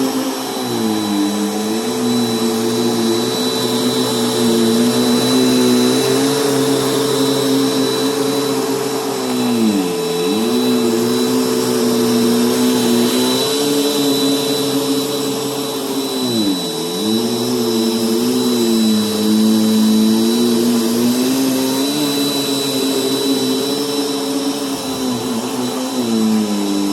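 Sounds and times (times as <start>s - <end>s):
vacuum cleaner motor whining: 0.0s - 26.9s.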